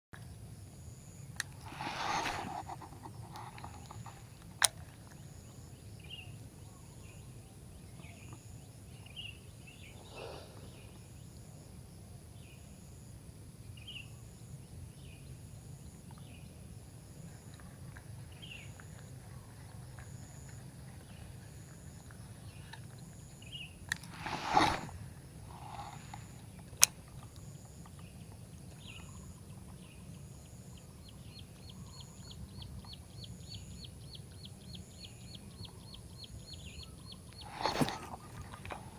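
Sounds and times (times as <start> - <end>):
bird chirps: 28.1 - 38.9.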